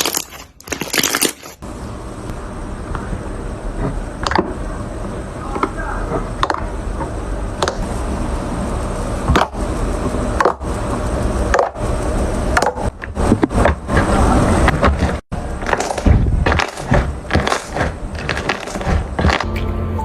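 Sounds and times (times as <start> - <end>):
slime crackling and popping: 0.0 - 1.6, 15.6 - 19.5.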